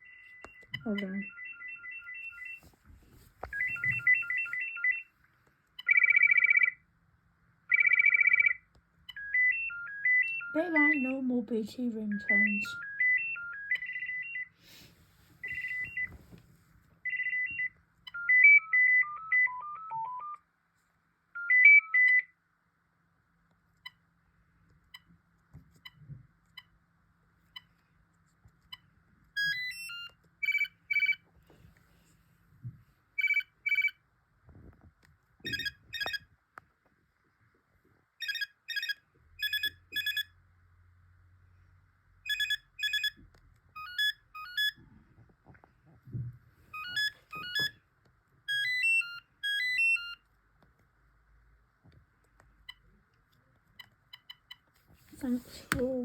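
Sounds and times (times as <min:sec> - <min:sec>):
high beeping ringtone tune: 0:00.0 - 0:02.6, 0:03.6 - 0:05.1, 0:07.7 - 0:11.3, 0:12.0 - 0:14.6, 0:15.4 - 0:16.1, 0:33.2 - 0:34.0, 0:35.5 - 0:36.2, 0:38.2 - 0:40.3, 0:42.3 - 0:43.2, 0:43.8 - 0:44.8, 0:46.8 - 0:47.8, 0:48.5 - 0:50.2
warbling trill phone ring: 0:05.8 - 0:06.8, 0:07.7 - 0:11.1, 0:38.2 - 0:40.3.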